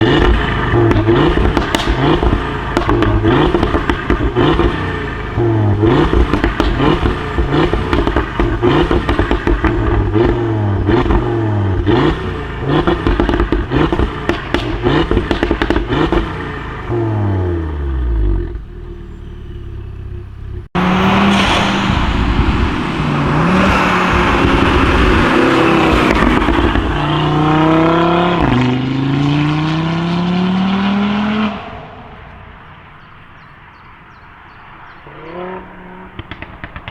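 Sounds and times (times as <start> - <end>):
exhaust pops and crackles: 0.0 - 29.9, 31.3 - 36.9
car engine revving: 0.0 - 36.9
rushing noise: 20.8 - 28.8.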